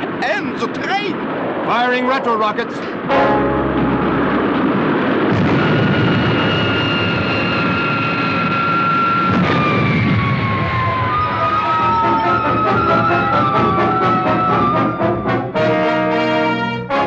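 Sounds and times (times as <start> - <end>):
high whine: 1.2 - 15.8
rockets firing roar: 3.6 - 15.0.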